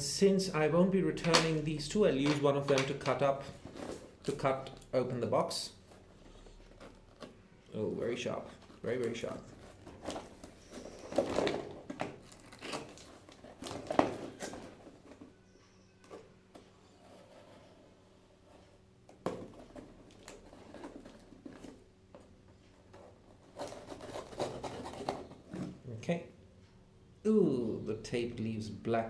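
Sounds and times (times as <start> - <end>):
tape and cardboard crinkling: 1.2 - 7.4, 8.0 - 15.4, 19.2 - 25.8.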